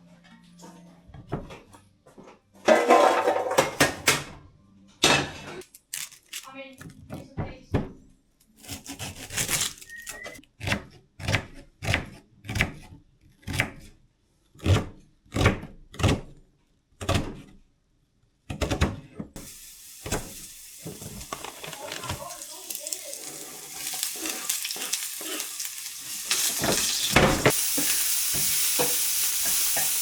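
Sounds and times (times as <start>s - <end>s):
knife chopping on wooden board: 10.6s - 13.9s, 14.6s - 16.4s, 17.0s - 17.5s
frying pan sizzling: 19.4s - 30.0s.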